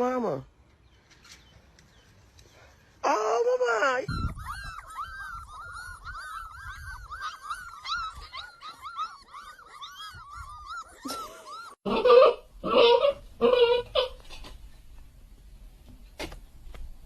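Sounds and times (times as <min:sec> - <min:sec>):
dog whining: 0:04.1 - 0:14.2.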